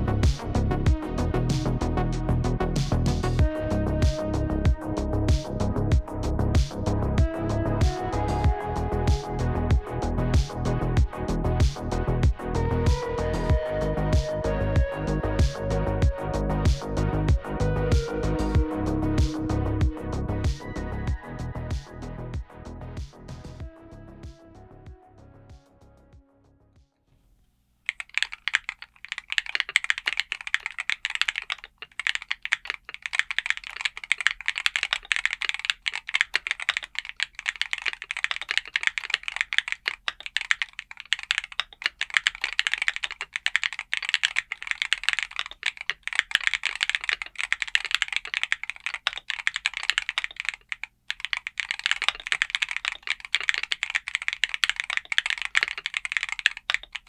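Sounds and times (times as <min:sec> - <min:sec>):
fast keyboard typing: 0:05.4 - 0:21.9, 0:27.9 - 0:57.0.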